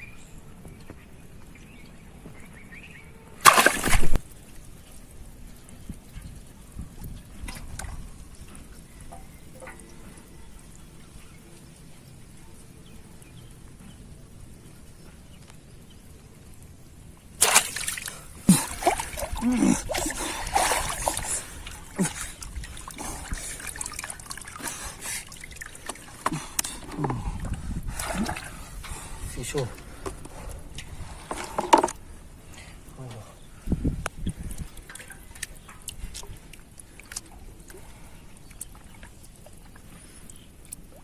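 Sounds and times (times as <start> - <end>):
water splashing and sloshing: 3.4 - 12.1, 16.5 - 32.9, 34.2 - 41.0
water trickling: 3.4 - 31.0, 32.0 - 41.0.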